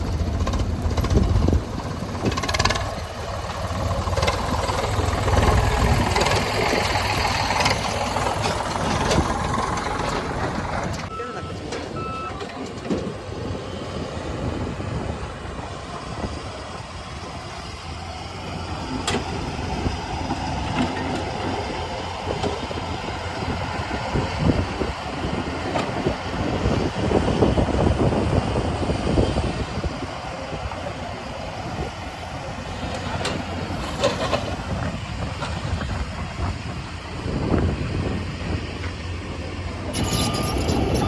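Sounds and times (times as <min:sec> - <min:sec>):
heavy diesel engine rumble: 0:00.0 - 0:41.0
sharp metal clanks: 0:39.9 - 0:41.0.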